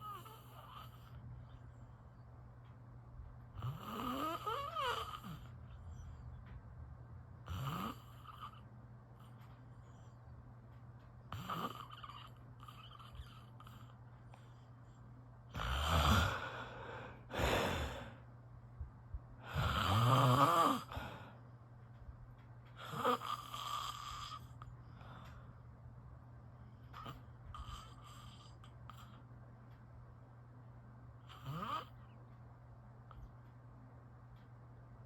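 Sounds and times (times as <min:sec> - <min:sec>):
person snoring: 0:03.6 - 0:05.5, 0:11.3 - 0:13.8, 0:15.5 - 0:18.2, 0:19.4 - 0:21.2, 0:22.8 - 0:24.5, 0:31.3 - 0:32.0.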